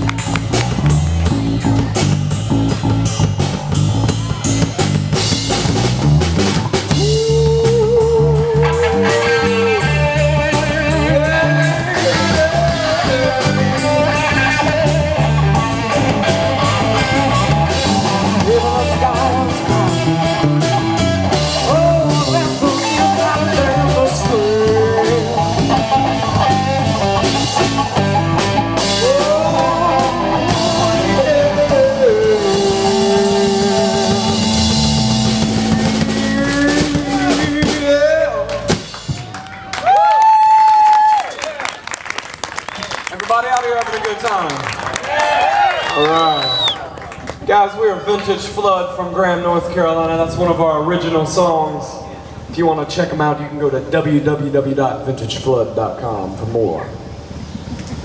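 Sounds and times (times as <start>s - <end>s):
blues-rock band playing: 0.0s - 40.0s.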